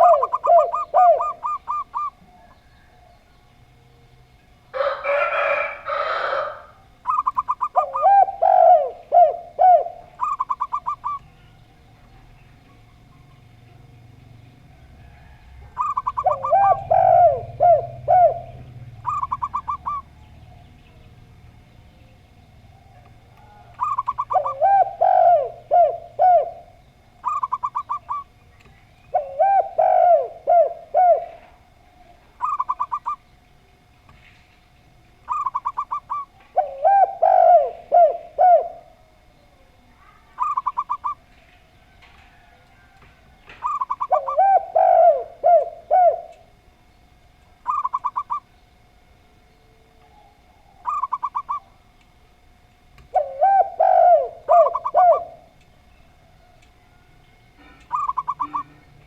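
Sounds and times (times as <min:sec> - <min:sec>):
low rolling dove coos: 0:00.0 - 0:34.2, 0:35.2 - 0:59.0
high staccato dove coos: 0:15.6 - 0:20.1, 0:57.6 - 0:59.0.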